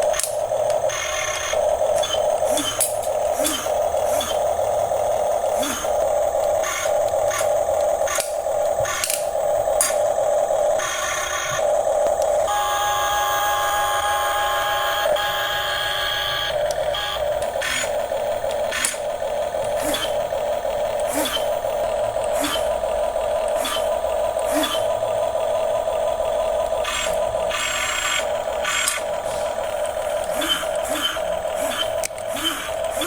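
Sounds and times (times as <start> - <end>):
sharp clicks: 0.0 - 10.1, 16.5 - 25.3, 26.8 - 33.0
electric gear motors buzzing: 0.0 - 33.0
high motor whine: 0.0 - 33.0.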